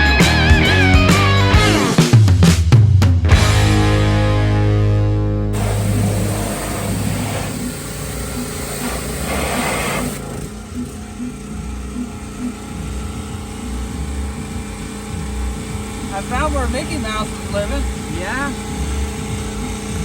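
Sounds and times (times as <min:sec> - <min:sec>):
water spray rushing: 0:05.6 - 0:11.4
pressure washer engine running: 0:05.6 - 0:20.0.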